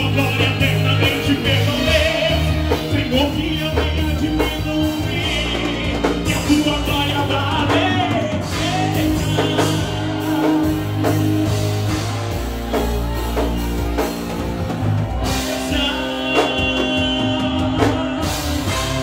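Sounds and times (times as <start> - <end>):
drum kit: 0.0 - 19.0
person singing: 0.0 - 19.0
worship band music: 0.0 - 19.0.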